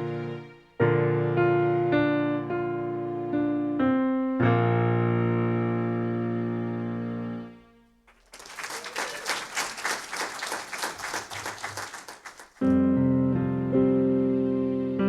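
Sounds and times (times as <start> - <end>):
audience clapping: 8.1 - 12.7.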